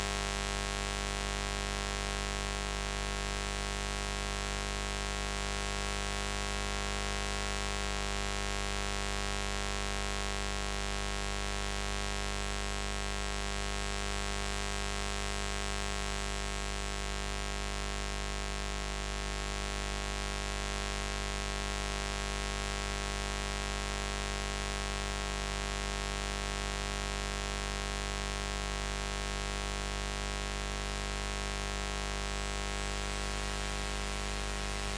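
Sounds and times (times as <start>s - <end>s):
electric buzz: 32.9s - 34.9s.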